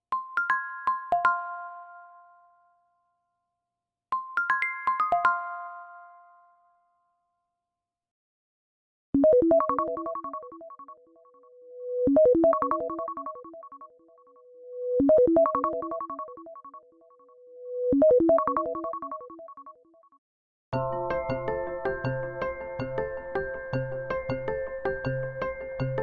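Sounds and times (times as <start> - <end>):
synthesized ringtone melody: 9.2 - 11.4, 12.1 - 14.2, 15.0 - 17.0, 18.0 - 19.8.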